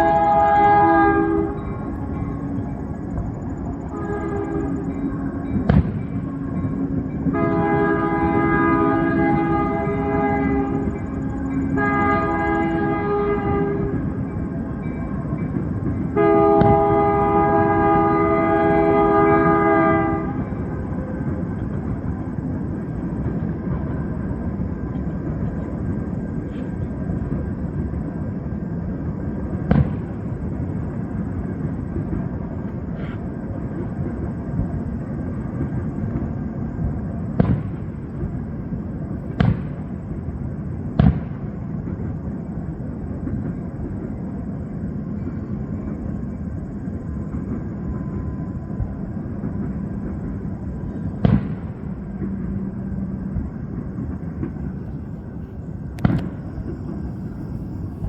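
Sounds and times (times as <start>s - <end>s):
freight train rumble: 0.0s - 58.0s
fireworks bursting: 5.6s - 6.3s, 36.8s - 40.2s, 40.9s - 42.0s, 48.8s - 58.0s.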